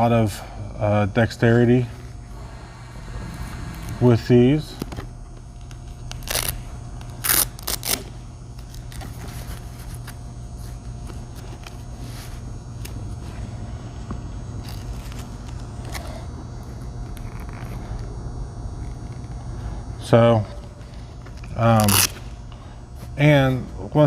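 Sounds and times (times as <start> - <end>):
steady low hum: 0.0 - 24.0
gloves and packaging crinkling: 5.6 - 13.4, 20.8 - 22.3.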